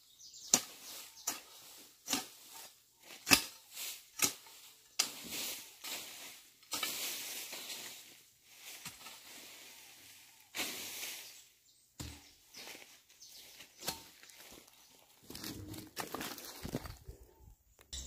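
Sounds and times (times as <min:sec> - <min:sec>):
hoe striking soil: 0:00.4 - 0:07.6, 0:12.0 - 0:12.7, 0:13.6 - 0:14.7
hoe scraping and rustling: 0:00.6 - 0:17.2.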